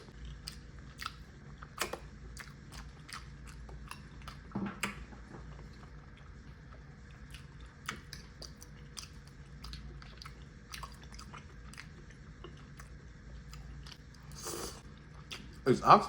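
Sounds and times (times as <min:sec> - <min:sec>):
person chewing food: 0:00.0 - 0:15.6
low steady hum: 0:00.0 - 0:16.0
wet mouth clicks and smacks: 0:01.8 - 0:02.0.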